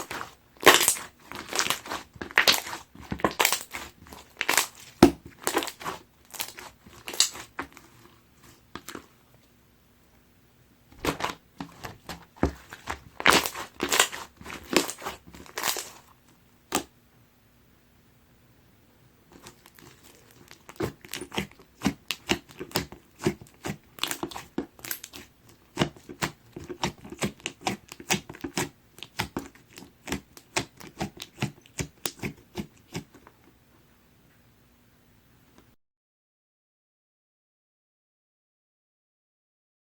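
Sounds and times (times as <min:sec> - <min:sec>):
slime squished with crackly pops: 0:00.0 - 0:07.8, 0:11.0 - 0:16.1, 0:19.4 - 0:33.1.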